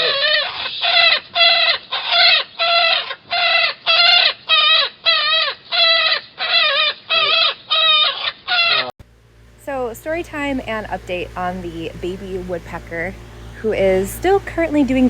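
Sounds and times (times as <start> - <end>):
woodpecker calling: 0.0 - 8.9.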